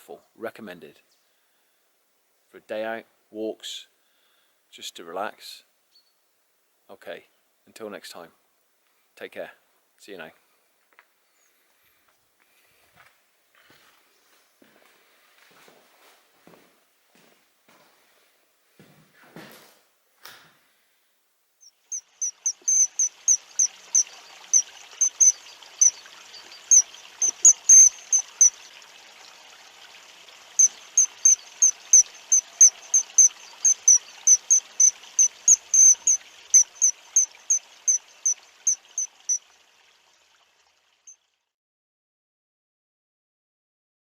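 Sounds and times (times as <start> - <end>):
short high-pitched chirps: 21.6 - 28.6, 30.6 - 39.4
stream rushing: 22.1 - 39.0.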